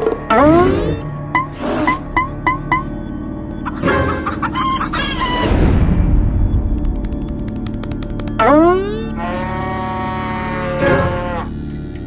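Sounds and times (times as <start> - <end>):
cartoon music held note: 8.4 - 9.6, 10.8 - 11.5.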